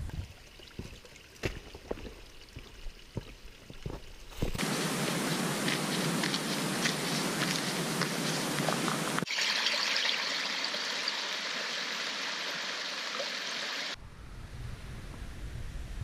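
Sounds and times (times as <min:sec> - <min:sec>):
water trickling: 0:00.0 - 0:05.4, 0:09.2 - 0:14.0.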